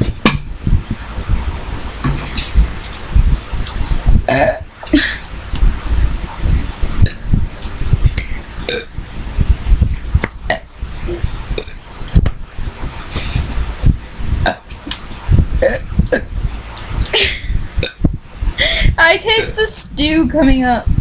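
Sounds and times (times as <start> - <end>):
girls belching: 4.3 - 5.2, 15.6 - 16.3.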